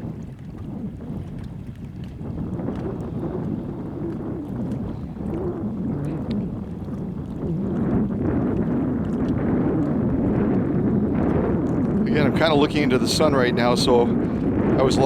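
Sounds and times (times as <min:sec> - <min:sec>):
wind buffeting microphone: 0:00.0 - 0:15.0
motorboat engine droning: 0:09.2 - 0:15.0.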